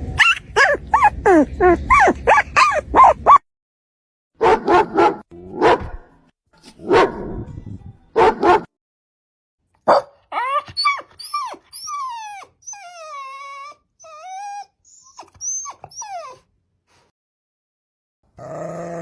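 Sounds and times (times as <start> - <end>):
dog whining and yelping: 0.0 - 3.4, 10.3 - 16.5
dog barking: 0.2 - 3.4, 4.4 - 6.0, 6.8 - 7.3, 8.2 - 8.7, 9.8 - 10.3.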